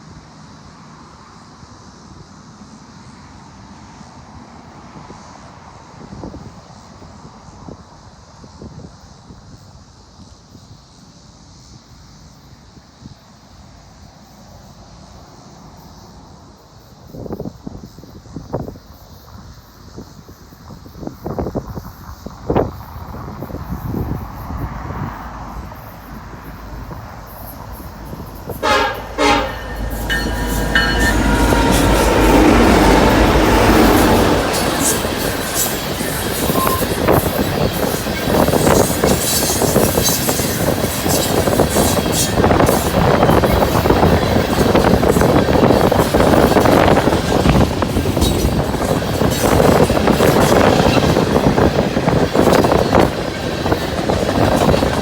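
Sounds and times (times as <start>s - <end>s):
train rumbling past: 22.1s - 55.0s
steel wheels clattering on rails: 25.2s - 55.0s
locomotive horn: 26.3s - 37.1s.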